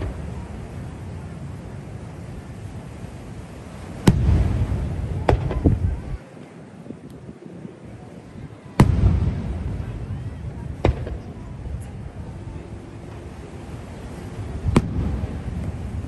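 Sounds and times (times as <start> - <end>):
firework bangs: 0.0 - 0.9, 3.8 - 6.2, 8.7 - 13.5, 14.2 - 16.0
firework cracks: 0.0 - 1.2, 3.8 - 6.2, 8.8 - 12.2, 14.3 - 16.0
low rolling rumble: 0.0 - 6.2, 8.0 - 16.0.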